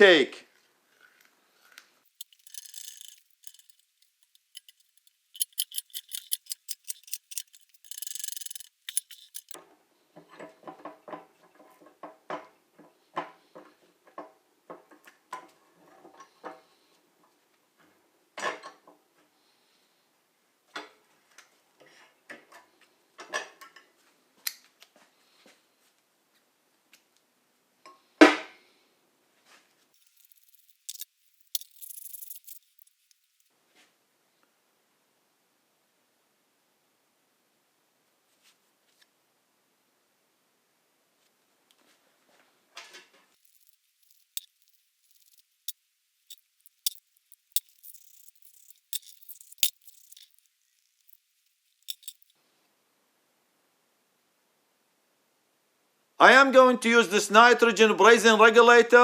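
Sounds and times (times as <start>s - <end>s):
metal tools knocking and clinking: 2.1s - 9.6s, 30.0s - 33.4s, 43.4s - 45.4s, 46.4s - 50.4s, 51.8s - 52.2s
scattered clicks: 2.1s - 9.6s, 30.0s - 33.4s, 43.4s - 45.4s, 46.3s - 50.4s, 51.8s - 52.3s
sharp ticks: 2.1s - 9.6s, 30.0s - 33.4s, 43.4s - 45.4s, 46.4s - 50.4s, 51.8s - 52.2s.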